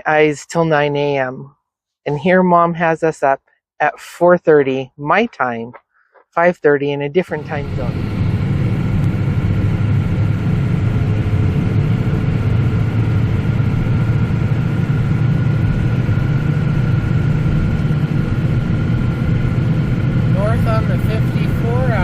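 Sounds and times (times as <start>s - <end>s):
truck engine and road noise: 7.3s - 22.0s.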